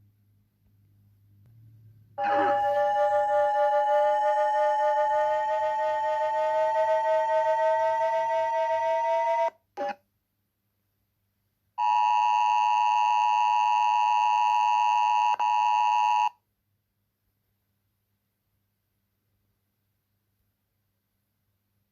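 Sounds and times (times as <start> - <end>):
electronic alarm tone: 2.2 - 6.1, 11.8 - 16.3.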